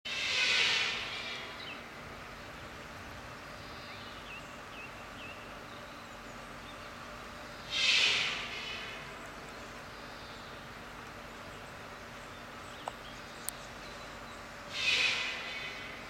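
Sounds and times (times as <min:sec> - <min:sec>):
high-pitched animal call: 0:00.1 - 0:01.7, 0:07.7 - 0:09.1, 0:14.7 - 0:16.0.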